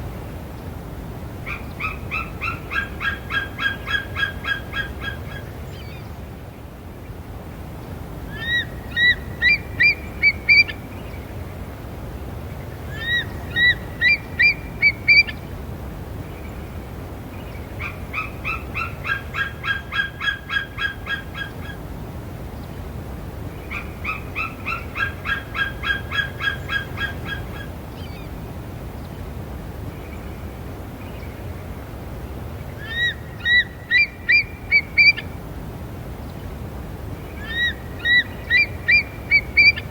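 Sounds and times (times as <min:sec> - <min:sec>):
eagle piping calls: 0:08.3 - 0:10.8, 0:13.0 - 0:15.4, 0:32.8 - 0:35.3, 0:37.4 - 0:39.9.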